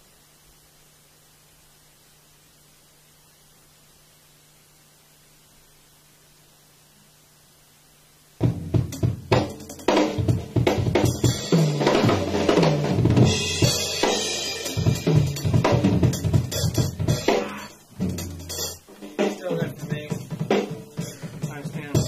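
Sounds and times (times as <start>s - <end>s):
drum kit playing: 8.4s - 22.0s.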